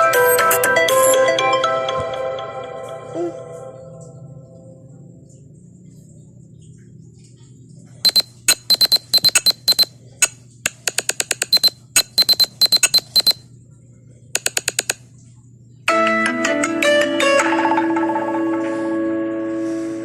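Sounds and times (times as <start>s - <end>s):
electronic beeping ringtone: 8.1s - 9.9s, 10.8s - 13.4s, 14.4s - 15.0s.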